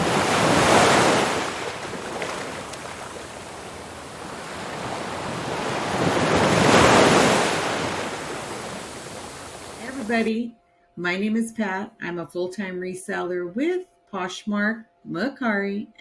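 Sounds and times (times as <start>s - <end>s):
ocean waves washing in: 0.0s - 10.3s.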